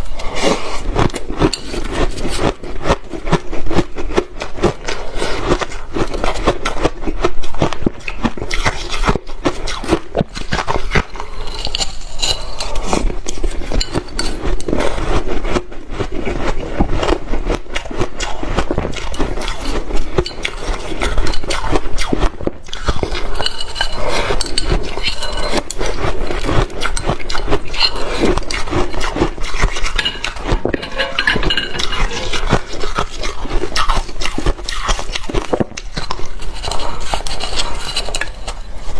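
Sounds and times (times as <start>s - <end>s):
chopsticks crunching shaved ice: 0.0s - 38.9s.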